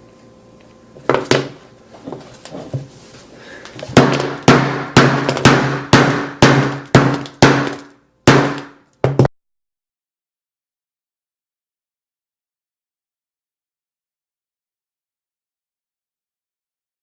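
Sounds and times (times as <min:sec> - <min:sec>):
hammer striking phone: 0:04.0 - 0:09.3.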